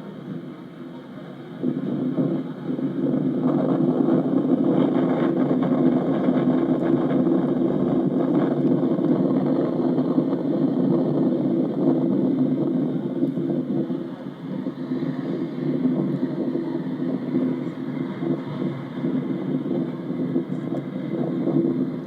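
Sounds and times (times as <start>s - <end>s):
bus diesel engine droning: 9.4s - 22.0s.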